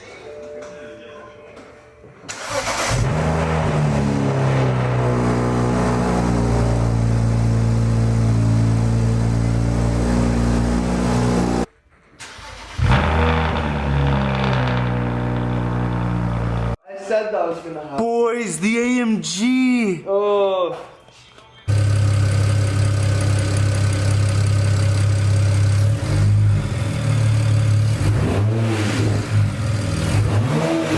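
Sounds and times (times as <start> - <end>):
car engine starting and idling: 2.3 - 16.8, 21.7 - 30.9.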